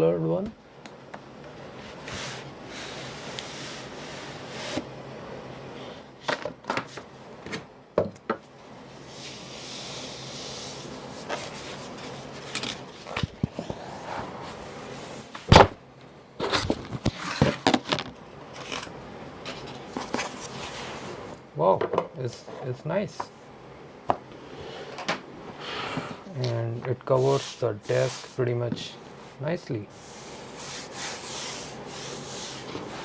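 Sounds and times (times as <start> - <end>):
desk mat handling rustling: 10.6 - 15.8, 16.4 - 21.2, 27.0 - 33.0.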